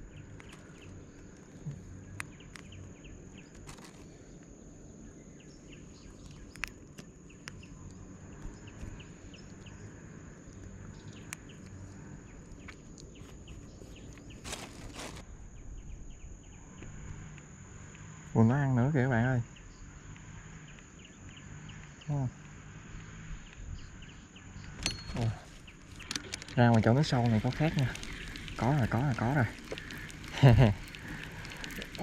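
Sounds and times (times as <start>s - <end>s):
faint low rumble: 0.0s - 32.0s
insects trilling: 0.0s - 32.0s
small clicks and knocks: 6.1s - 9.8s, 24.6s - 32.0s
rustling: 11.8s - 15.3s, 24.7s - 32.0s.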